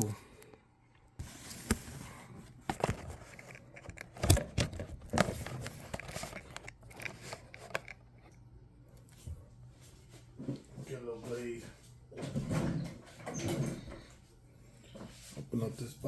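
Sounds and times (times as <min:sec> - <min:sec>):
packaging rustling and crinkling: 0:01.2 - 0:08.0.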